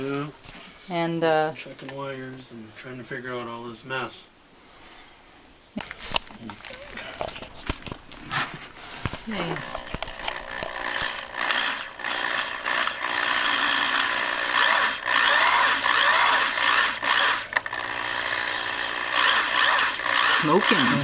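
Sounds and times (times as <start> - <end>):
drill bit screeching on metal: 11.4 - 17.5.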